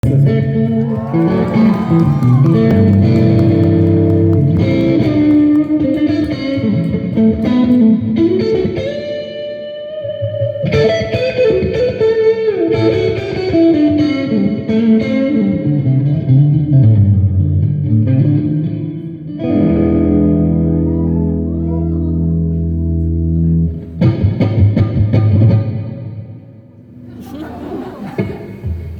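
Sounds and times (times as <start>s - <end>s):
guitar playing: 0.0s - 28.9s.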